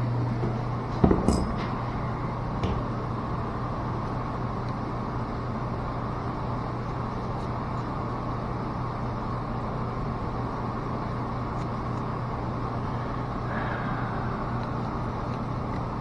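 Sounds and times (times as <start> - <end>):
low machinery hum: 0.0 - 16.0
sharp knocks of tools: 1.0 - 1.7.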